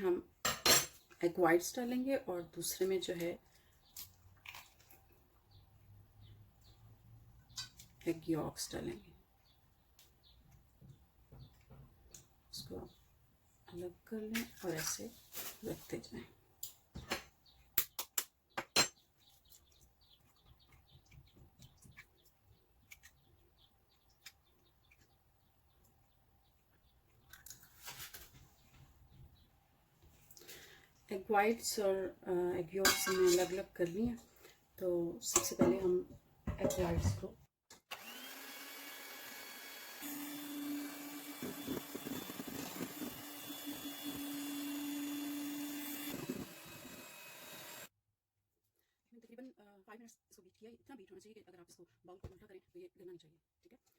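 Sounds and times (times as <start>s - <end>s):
birds chirping: 17.3s - 27.4s
electric mixer running: 37.9s - 47.9s.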